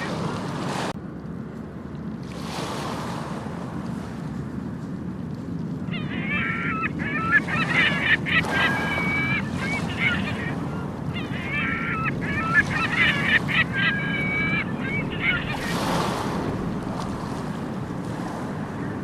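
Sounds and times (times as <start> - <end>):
surf washing on beach: 0.0 - 1.0, 2.1 - 19.0
gulls crying: 5.7 - 19.0.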